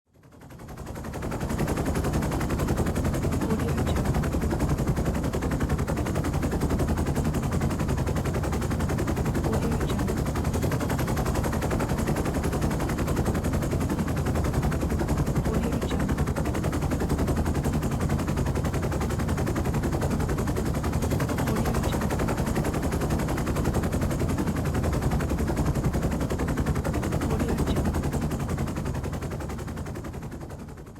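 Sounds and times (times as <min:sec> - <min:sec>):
helicopter engine low rumble: 0:00.1 - 0:30.9
helicopter rotor blades chopping: 0:00.3 - 0:30.9.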